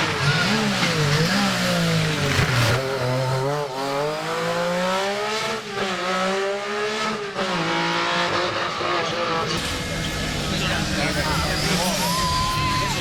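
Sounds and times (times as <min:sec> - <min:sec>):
car engine accelerating through gears: 0:00.0 - 0:12.4.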